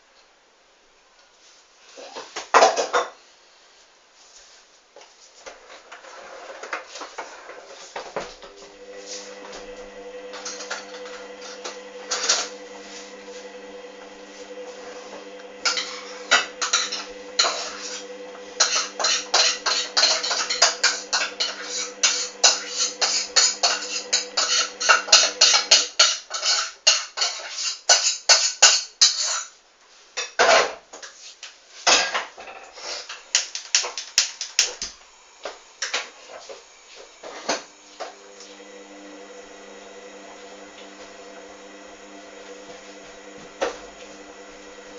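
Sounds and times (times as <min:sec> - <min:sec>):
washing machine motor hum: 0:05.6 - 0:26.2, 0:32.8 - 0:44.9.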